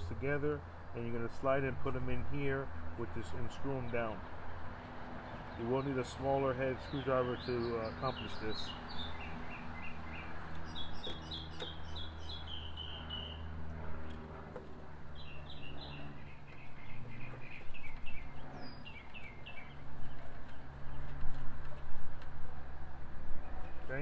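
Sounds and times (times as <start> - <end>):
steady low hum: 0.0 - 24.0
bird chirping: 5.2 - 14.2, 15.1 - 21.2.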